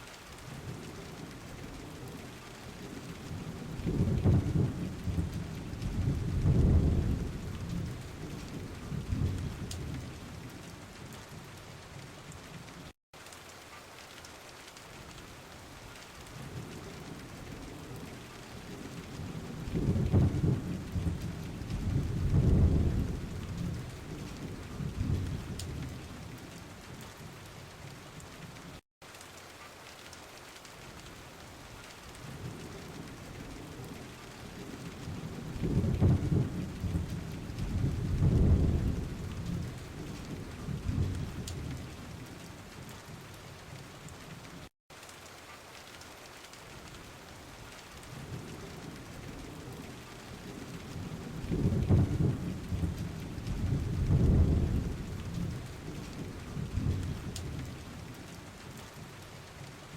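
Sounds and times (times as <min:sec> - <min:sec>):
steady rain falling: 0:00.0 - 0:59.9
rolling thunder: 0:00.6 - 0:10.4, 0:16.3 - 0:26.4, 0:32.3 - 0:42.2, 0:48.2 - 0:58.2.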